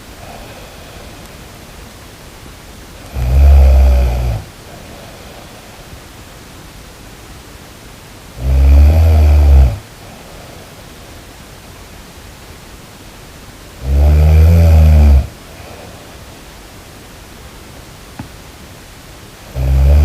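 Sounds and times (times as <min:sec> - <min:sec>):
steady background hiss: 0:00.0 - 0:20.0
person snoring: 0:00.2 - 0:01.3, 0:03.0 - 0:05.7, 0:08.4 - 0:09.8, 0:13.8 - 0:15.9, 0:19.5 - 0:20.0.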